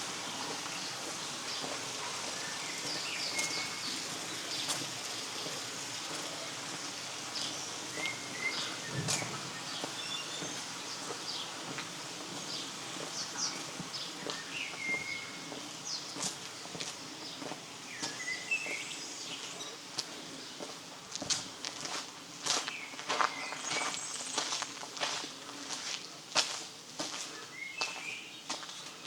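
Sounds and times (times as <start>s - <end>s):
flowing river water: 0.0s - 16.0s
small birds chirping: 0.0s - 20.8s, 22.6s - 24.7s, 27.2s - 29.0s.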